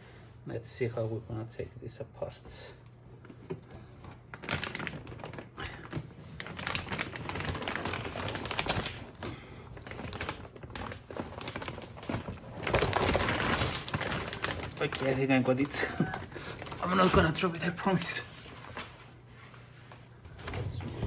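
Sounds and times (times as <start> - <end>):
packaging clicks and rustles: 3.1 - 18.9.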